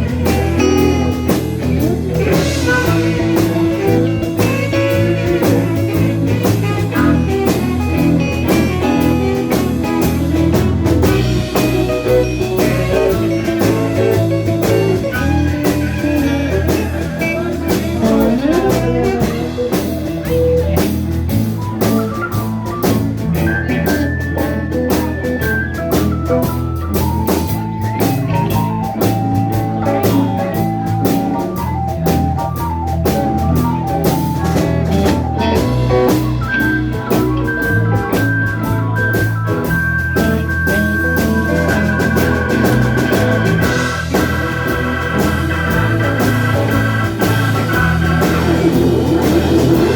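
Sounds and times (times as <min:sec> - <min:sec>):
blues-rock band playing: 0:00.0 - 0:49.9
electric guitar: 0:00.0 - 0:49.9.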